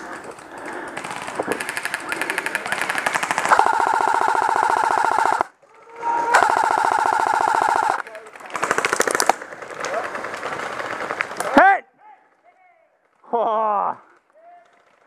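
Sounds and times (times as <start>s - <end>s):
airsoft guns firing full auto: 0.4s - 5.5s, 6.4s - 11.4s.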